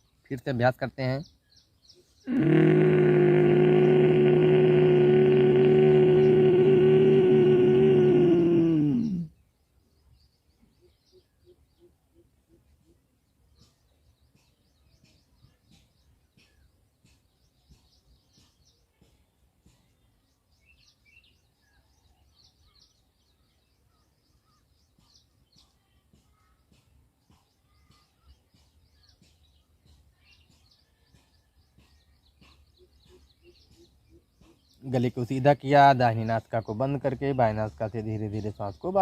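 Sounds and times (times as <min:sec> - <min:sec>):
faint bird chirps: 0:08.9 - 0:39.0.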